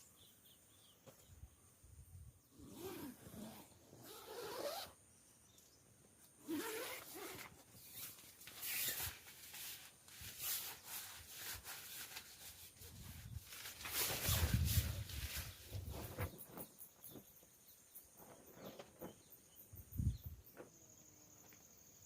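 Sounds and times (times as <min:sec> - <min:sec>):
fabric rubbing and rustling: 0:02.6 - 0:04.9, 0:06.4 - 0:17.3
zipper being pulled: 0:02.6 - 0:05.0, 0:06.4 - 0:09.8.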